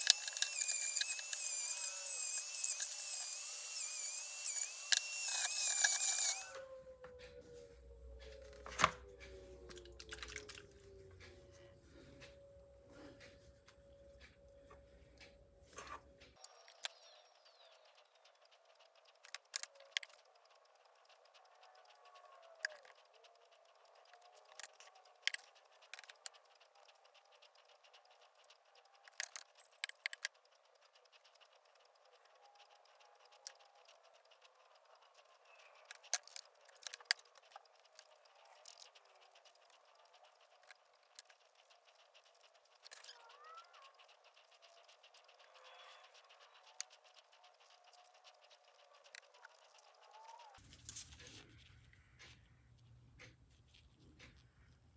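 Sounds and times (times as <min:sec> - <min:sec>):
metal hand tools clicking: 0:00.0 - 0:06.6, 0:16.5 - 0:50.6.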